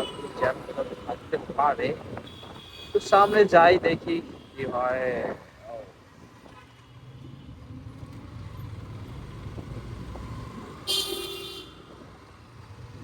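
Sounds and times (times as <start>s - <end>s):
road noise: 0.0s - 13.0s
shrill vehicle horn: 10.9s - 11.8s.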